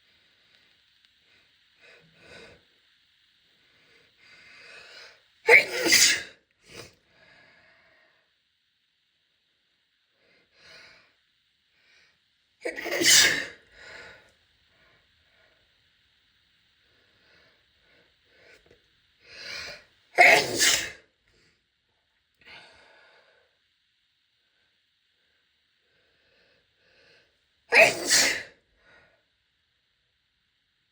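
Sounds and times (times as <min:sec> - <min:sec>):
woman sneezing: 0:05.5 - 0:06.4, 0:12.6 - 0:13.6, 0:20.2 - 0:21.0, 0:27.7 - 0:28.6.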